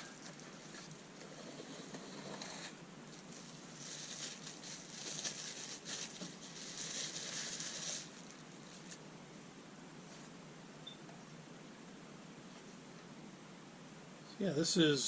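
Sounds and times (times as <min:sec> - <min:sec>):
packaging rustling: 0:02.6 - 0:09.0.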